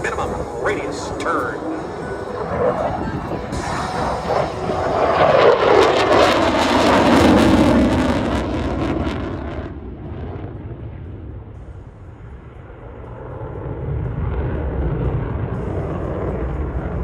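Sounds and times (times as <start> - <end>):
jet engine roar passing: 0.0 - 17.0.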